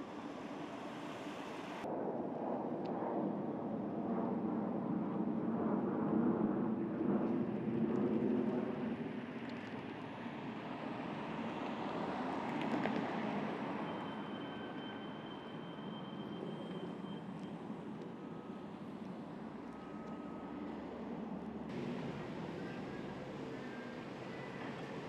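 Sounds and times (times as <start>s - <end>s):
street traffic noise: 10.3s - 25.0s.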